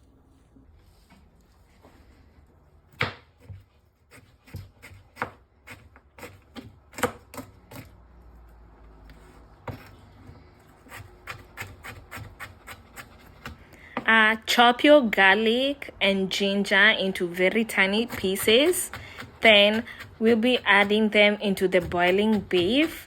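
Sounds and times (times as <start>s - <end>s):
knife chopping on cutting board: 2.9s - 7.9s, 10.9s - 13.6s, 17.9s - 23.0s.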